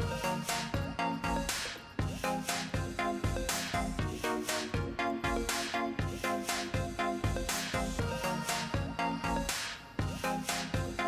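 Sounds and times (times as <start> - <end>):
electronic music with steady beat: 0.0 - 11.0.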